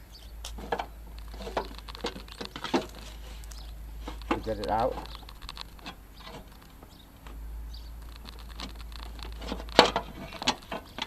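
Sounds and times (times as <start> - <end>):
low steady hum: 0.0 - 11.0
metal hardware clicking and knocking: 8.0 - 11.0.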